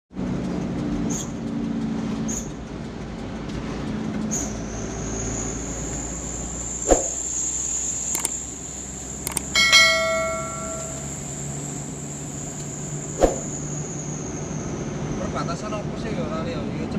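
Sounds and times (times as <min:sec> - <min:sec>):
road noise: 0:00.2 - 0:16.1
thin high whine: 0:09.3 - 0:11.7.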